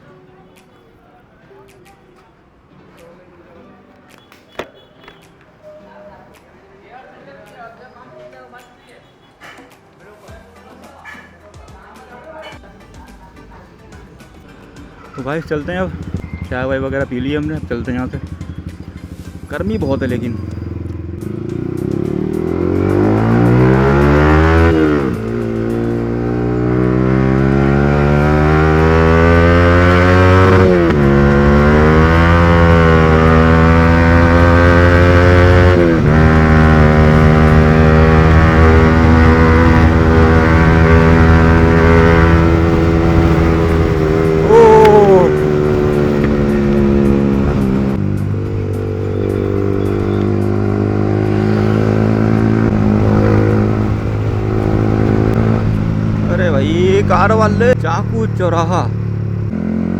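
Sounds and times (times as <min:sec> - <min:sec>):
motorcycle engine accelerating: 0:15.4 - 0:59.9.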